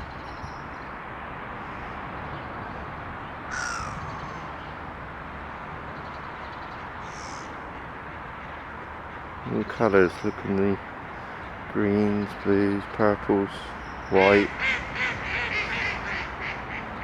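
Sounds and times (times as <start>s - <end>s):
crow calling: 3.5s - 4.7s, 6.3s - 12.4s, 13.6s - 17.0s.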